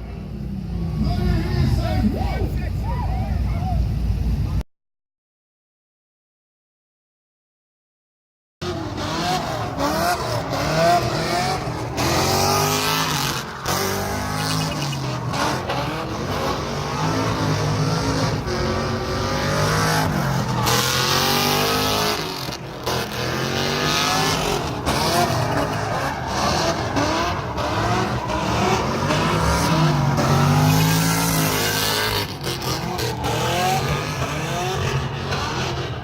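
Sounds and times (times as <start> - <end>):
car engine revving: 8.6 - 36.0
tyre squeal: 12.6 - 15.2, 24.2 - 34.2.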